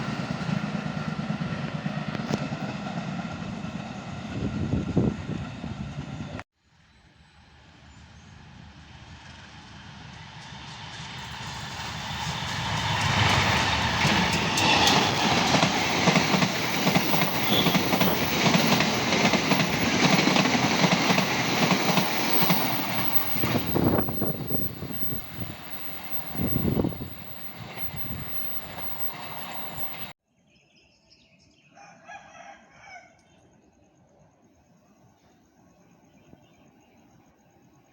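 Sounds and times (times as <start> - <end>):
train wheels rushing on rails: 0.0 - 6.4, 8.4 - 30.2.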